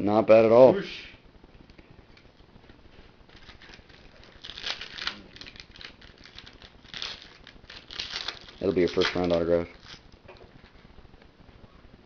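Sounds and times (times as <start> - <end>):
crinkling of cards and foil wrappers: 1.9 - 11.0.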